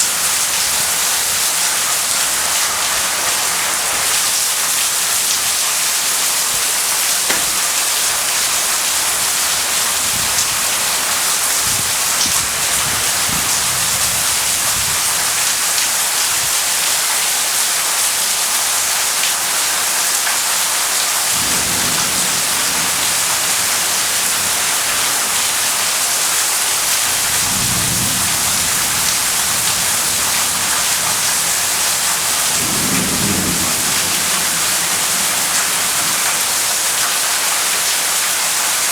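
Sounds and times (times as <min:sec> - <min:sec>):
heavy rain falling: 0:00.0 - 0:38.9
low thunder rumbling: 0:06.6 - 0:15.5, 0:21.2 - 0:37.4.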